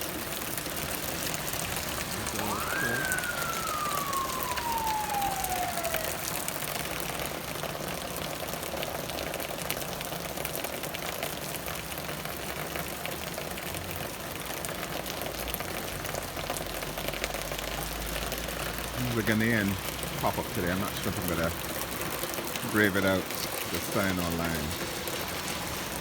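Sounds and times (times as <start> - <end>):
steady rain shower: 0.0 - 26.0
siren wailing: 1.0 - 7.7.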